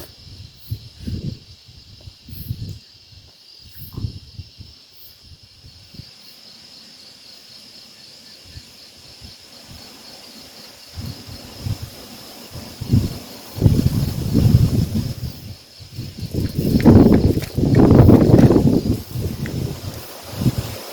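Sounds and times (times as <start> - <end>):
wind buffeting microphone: 0.0 - 6.1, 10.9 - 20.9
insects chirring: 0.0 - 20.9.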